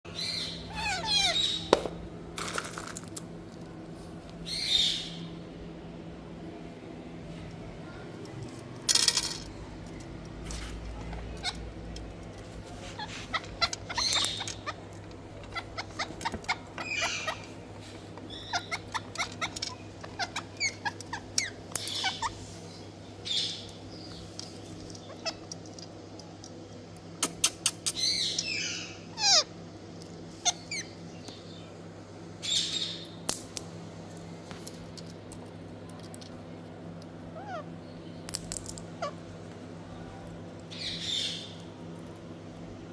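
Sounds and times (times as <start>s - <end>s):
parakeets squawking and chattering: 0.1s - 2.0s, 4.4s - 5.3s, 10.5s - 25.8s, 27.2s - 29.6s, 30.2s - 31.2s, 32.4s - 33.2s, 37.2s - 37.9s, 38.9s - 41.7s
steady low hum: 0.1s - 42.9s.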